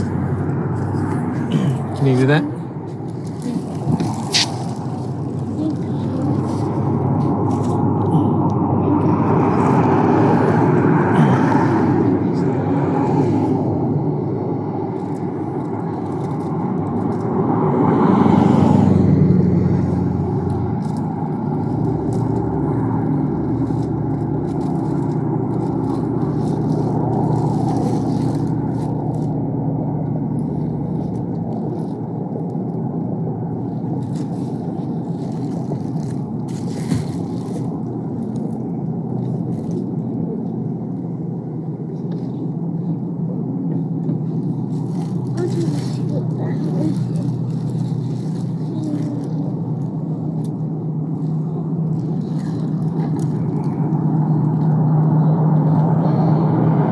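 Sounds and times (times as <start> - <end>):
car cabin rumble: 0.0 - 17.5
car engine and road noise: 0.0 - 56.9.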